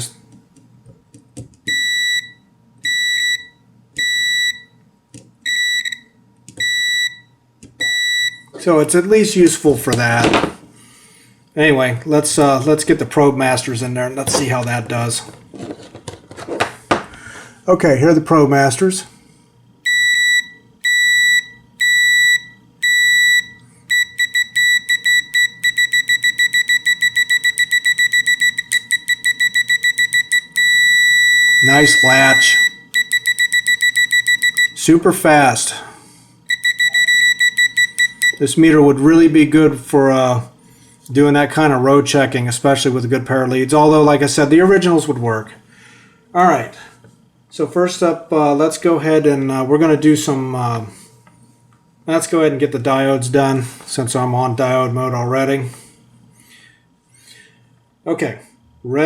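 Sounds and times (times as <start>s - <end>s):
high-pitched continuity beeps: 19.9s - 34.8s, 36.5s - 38.4s
probe tip clicking: 23.9s - 31.4s, 33.0s - 34.8s.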